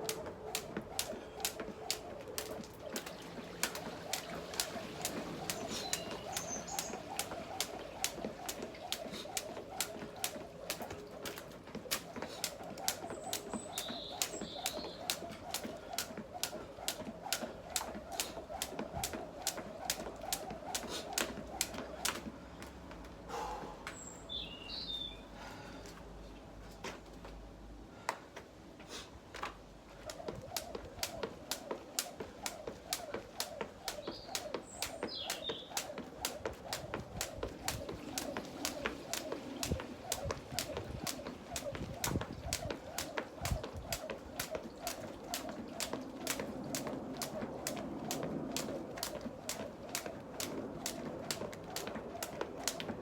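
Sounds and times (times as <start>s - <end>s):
jump rope slapping the ground: 0.0s - 23.2s, 29.3s - 53.0s
birds chirping: 1.1s - 15.9s, 23.4s - 25.3s, 33.6s - 36.1s.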